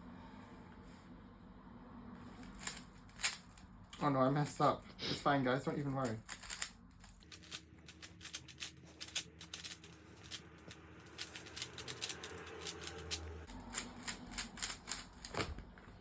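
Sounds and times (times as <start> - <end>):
puzzle cube plastic clicks: 6.0 - 15.5.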